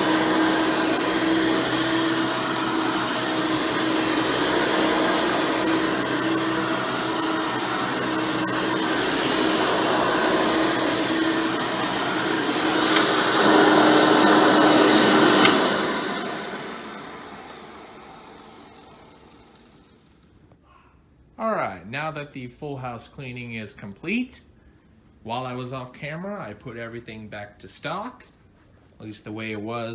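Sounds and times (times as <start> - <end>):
upright vacuum motor whine: 0.0 - 20.3.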